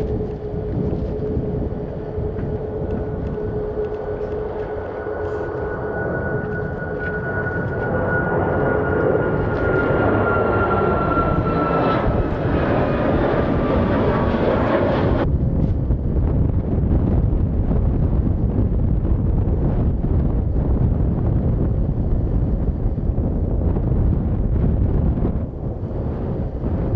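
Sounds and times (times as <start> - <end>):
jet engines whining: 0.0 - 15.3
wind buffeting microphone: 0.0 - 26.9.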